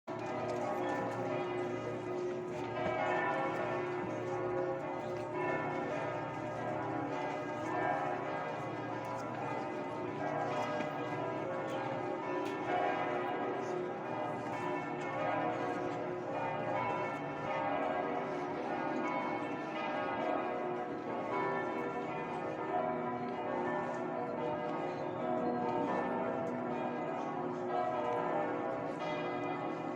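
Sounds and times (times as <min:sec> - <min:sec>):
church bells ringing: 0:00.1 - 0:29.9.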